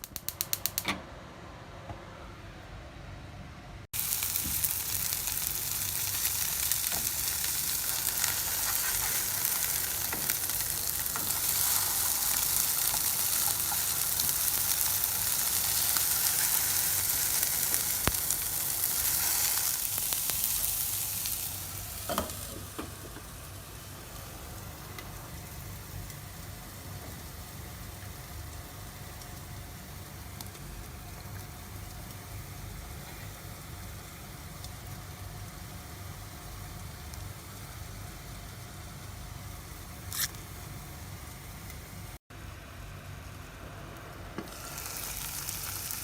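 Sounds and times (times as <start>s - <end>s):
food sizzling in a pan: 4.0s - 30.4s, 44.4s - 46.0s.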